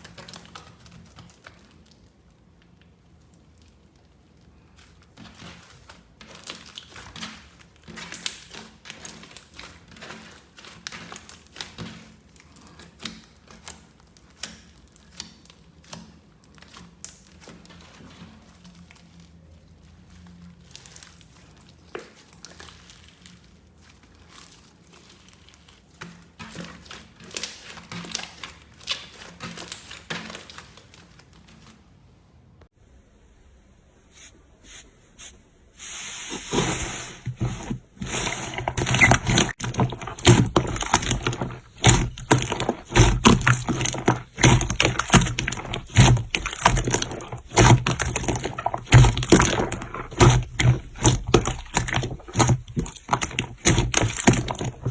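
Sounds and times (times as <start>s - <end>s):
slime crackling and popping: 37.3s - 54.9s.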